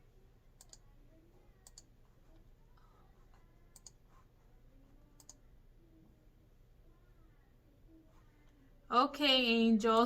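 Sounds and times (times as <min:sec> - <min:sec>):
computer mouse clicks: 0:00.6 - 0:00.9, 0:01.6 - 0:01.9, 0:03.7 - 0:04.0, 0:05.2 - 0:05.4.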